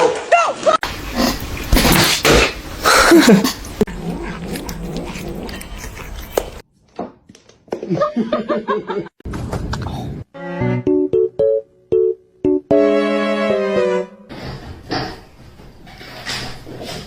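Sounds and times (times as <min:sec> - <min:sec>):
pet animal vocalising: 0:03.9 - 0:06.6.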